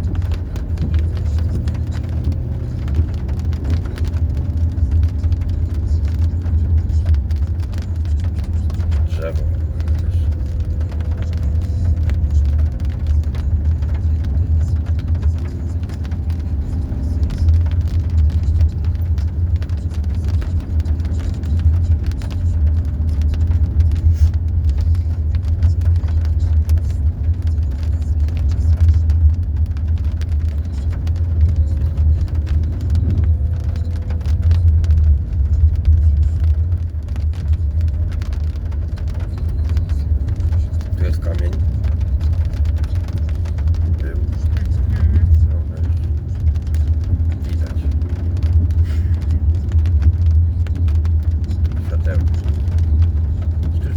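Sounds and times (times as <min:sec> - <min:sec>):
engine and tyre rumble: 0:00.0 - 0:53.9
knocks and rattles in car: 0:00.0 - 0:53.9.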